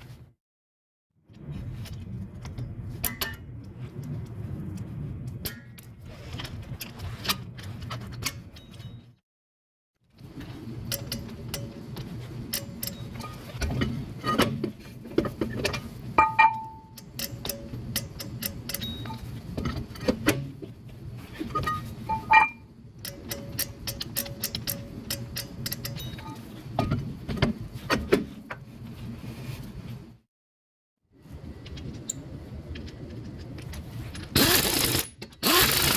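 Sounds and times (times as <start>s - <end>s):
metal tools clicking and clinking: 34.2s - 35.9s.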